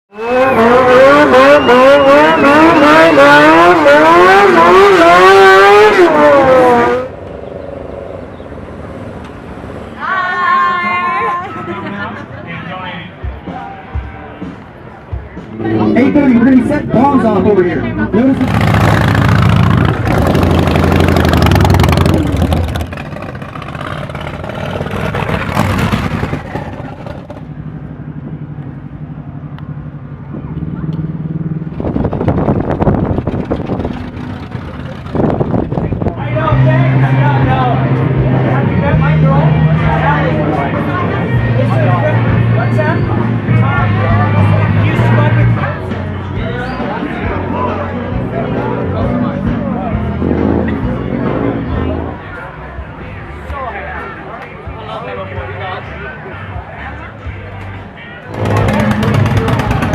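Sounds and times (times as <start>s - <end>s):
motorcycle engine revving: 0.1s - 7.2s, 18.0s - 29.0s, 30.7s - 36.0s, 58.3s - 59.9s.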